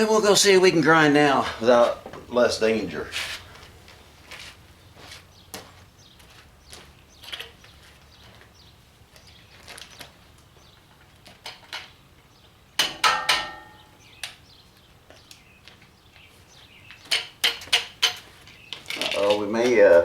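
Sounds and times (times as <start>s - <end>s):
knocks on steel: 12.8s - 14.0s
steel clanking: 12.8s - 14.0s.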